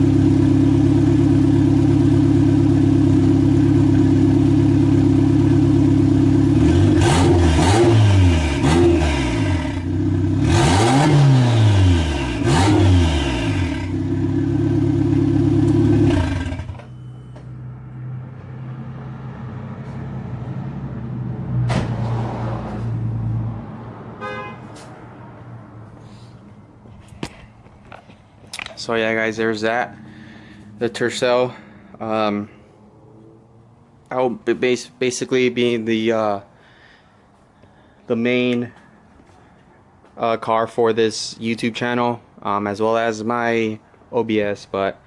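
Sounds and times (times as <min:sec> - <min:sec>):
car engine idling and revving: 0:00.0 - 0:35.8.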